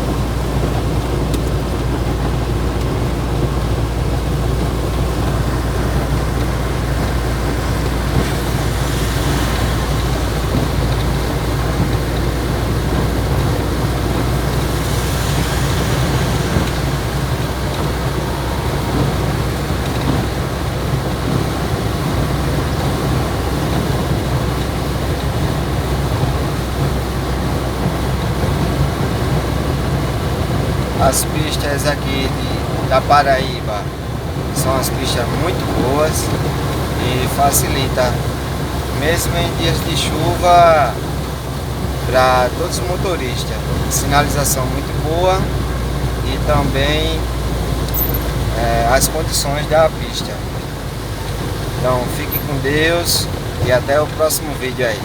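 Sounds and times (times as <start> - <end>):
rain and road noise: 0.0 - 55.0
truck engine droning: 0.0 - 55.0
hiss: 14.6 - 17.3.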